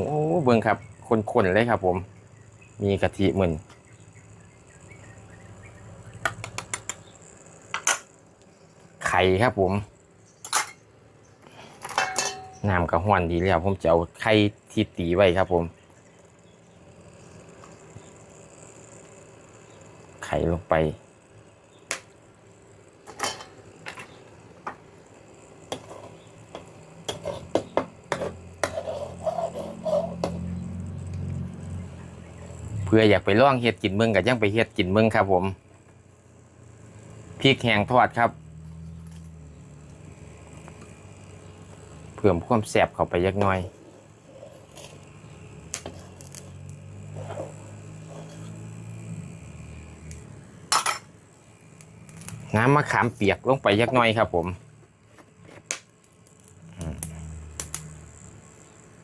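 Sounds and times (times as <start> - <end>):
low steady hum: 0.0 - 59.0
utensil clicking against a pot: 6.1 - 7.1, 55.7 - 57.9
metal utensil clinking on pot: 11.9 - 12.6.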